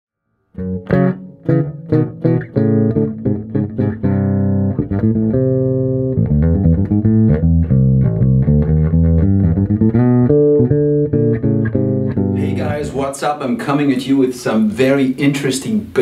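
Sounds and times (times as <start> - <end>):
bass guitar plucked notes: 0.6 - 13.1.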